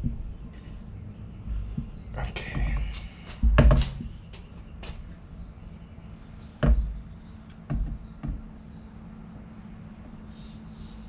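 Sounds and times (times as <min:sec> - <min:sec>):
heavy knocks: 0:01.7 - 0:04.2, 0:06.6 - 0:07.0.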